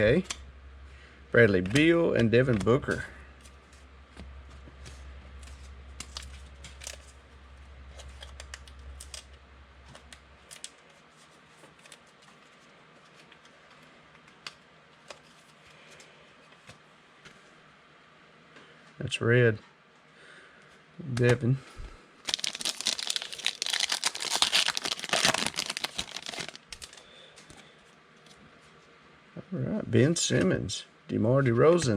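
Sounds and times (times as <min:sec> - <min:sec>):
trading cards being handled: 0:22.2 - 0:27.0.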